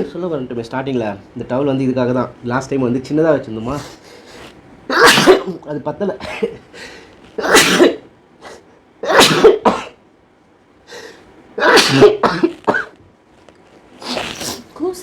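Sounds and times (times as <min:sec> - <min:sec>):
person sneezing: 0:04.9 - 0:05.5, 0:07.4 - 0:10.0, 0:11.6 - 0:12.9, 0:14.0 - 0:14.7.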